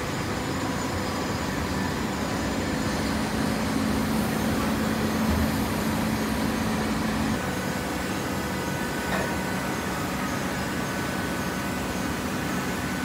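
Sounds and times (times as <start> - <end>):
baler machine hum: 0.0 - 8.2.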